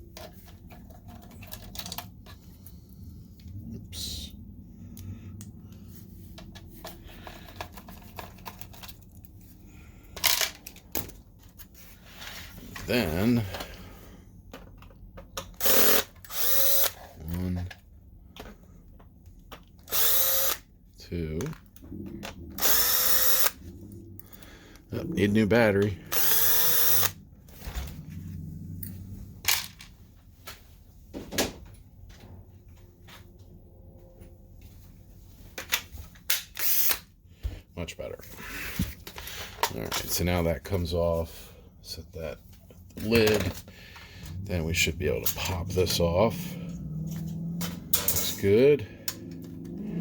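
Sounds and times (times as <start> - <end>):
handling scrapes and clicks: 0.0 - 3.5, 5.0 - 12.9.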